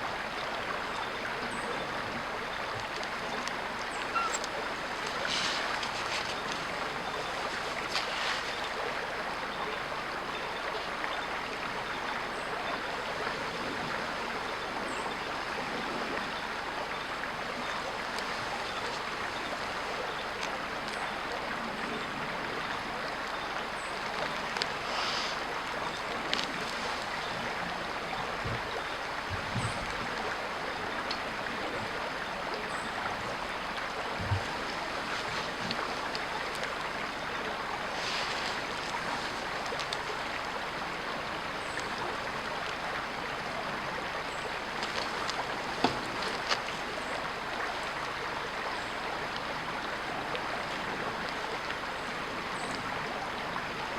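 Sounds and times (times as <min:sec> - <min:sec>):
creek water rushing: 0:00.0 - 0:53.9
faint clicks: 0:38.2 - 0:40.3.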